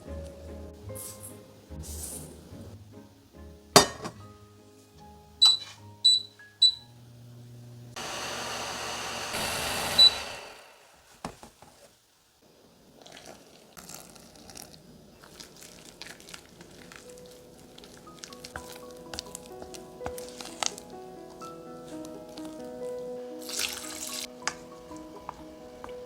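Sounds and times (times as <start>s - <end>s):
rushing noise: 8.0s - 11.2s
electronic beeps: 9.8s - 10.6s.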